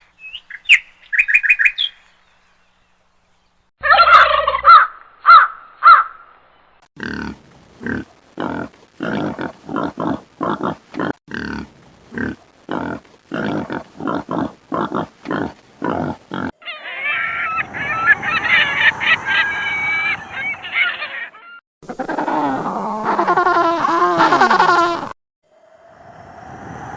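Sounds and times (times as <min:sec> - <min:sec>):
loud animal calls: 0:16.3 - 0:24.8
overlapping flock calls: 0:16.6 - 0:21.6
short repeated animal calls: 0:16.6 - 0:22.4.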